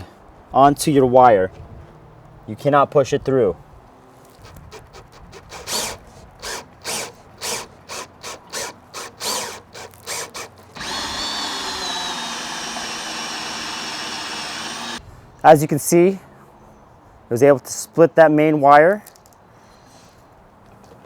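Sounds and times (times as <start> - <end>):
wire stripper slitting cable insulation: 4.3 - 15.0
power drill whining: 4.4 - 15.0.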